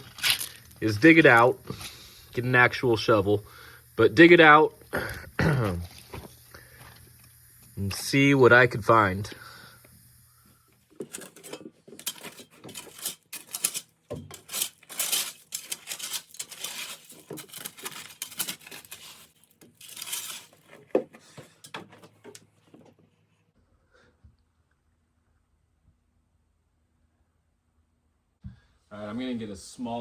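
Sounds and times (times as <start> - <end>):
shovel scraping and clinking in dirt: 11.0 - 20.8.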